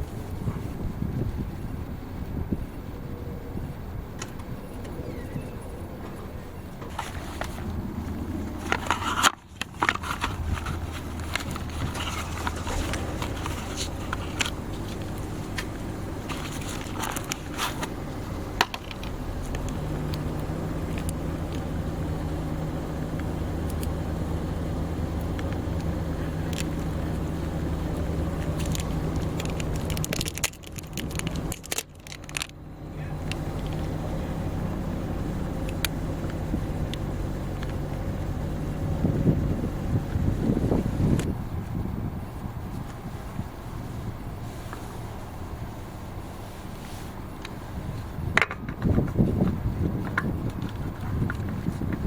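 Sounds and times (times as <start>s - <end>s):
steady low hum: 0.0s - 52.0s
sharp clicks and scrapes: 6.8s - 21.6s, 28.4s - 32.6s.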